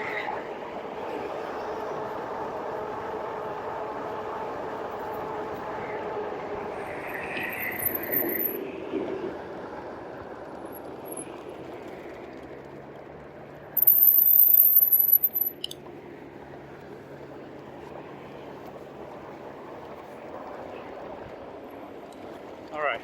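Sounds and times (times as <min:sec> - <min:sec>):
high-pitched squeal: 0:06.7 - 0:08.6.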